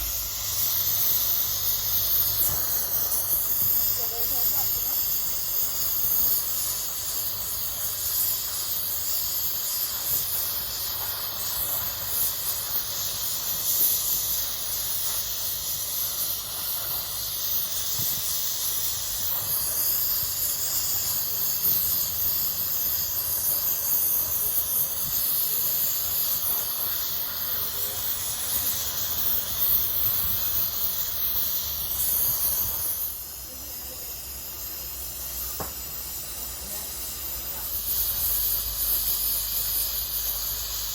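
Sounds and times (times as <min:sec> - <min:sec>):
welding torch flame hissing: 0:00.0 - 0:40.9.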